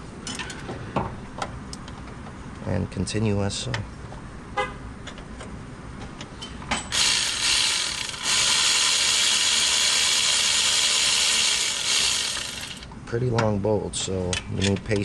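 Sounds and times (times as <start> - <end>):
ratchet wrench clicking: 6.9 - 12.9.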